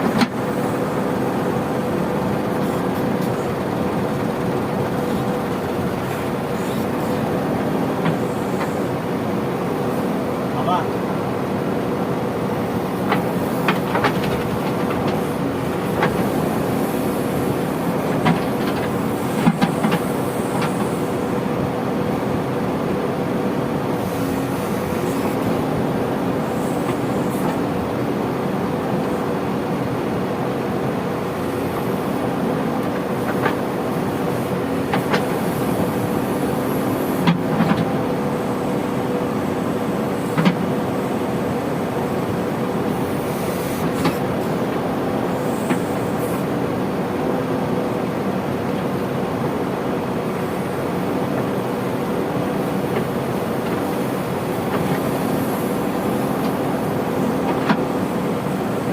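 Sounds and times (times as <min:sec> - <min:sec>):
diesel engine running: 0:00.0 - 0:58.9.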